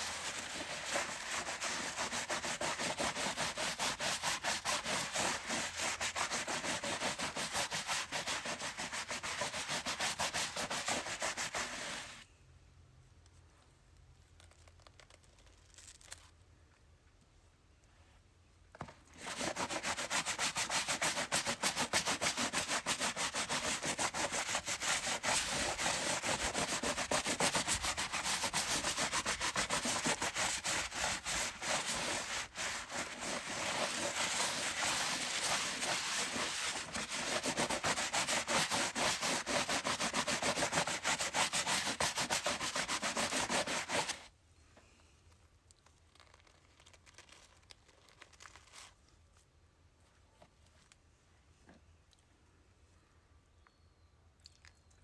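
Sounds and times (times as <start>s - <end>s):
brush scrubbing a chair: 0.0s - 12.2s, 19.2s - 44.3s.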